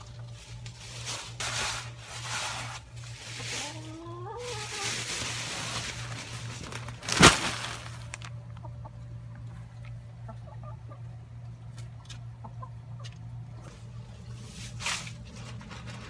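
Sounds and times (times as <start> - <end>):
steady low hum: 0.0 - 16.0
chickens clucking: 3.2 - 5.9, 8.3 - 13.8.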